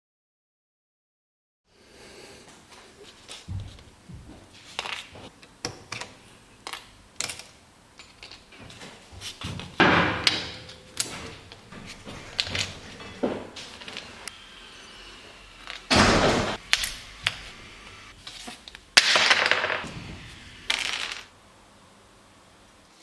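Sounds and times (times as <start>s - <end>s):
clicks and knocks of small tools: 4.7s - 14.4s
loud clatter: 8.2s - 21.3s.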